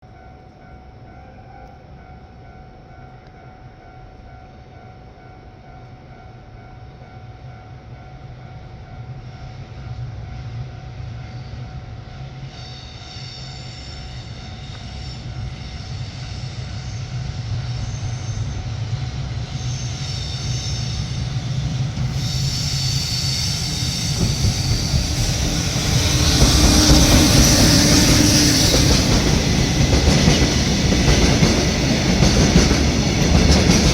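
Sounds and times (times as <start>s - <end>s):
electric locomotive hauling wagons: 0.1s - 33.9s
high-pitched whine: 9.4s - 33.9s.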